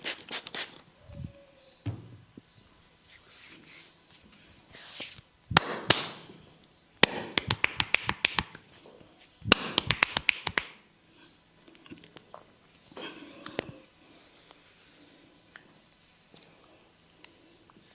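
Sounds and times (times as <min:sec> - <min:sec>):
hands tapping on head: 0:07.0 - 0:08.6, 0:09.5 - 0:10.8.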